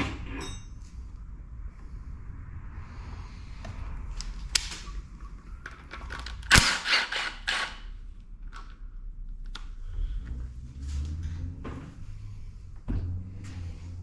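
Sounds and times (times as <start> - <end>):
metal tools clanking: 0.0 - 1.0.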